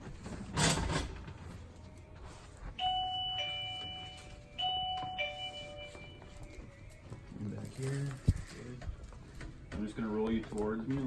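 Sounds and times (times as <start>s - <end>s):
two-tone ding-dong chime: 2.8s - 6.3s.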